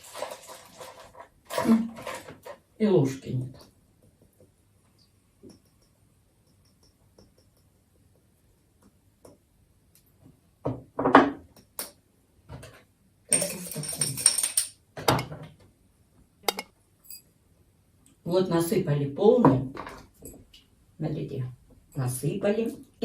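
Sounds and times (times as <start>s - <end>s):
spoon clicking against dishes: 5.5s - 7.7s, 16.5s - 16.7s.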